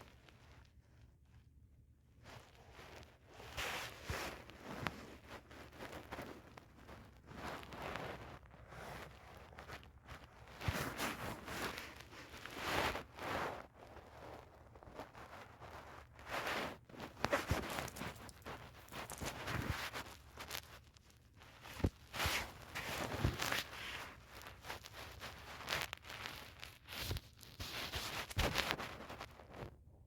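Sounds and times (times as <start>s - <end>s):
rustling and shuffling: 0.0s - 30.0s.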